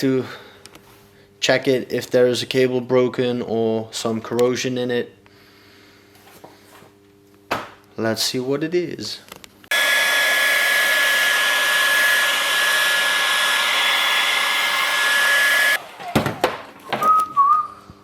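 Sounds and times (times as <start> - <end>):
electric blower running: 9.7 - 16.0.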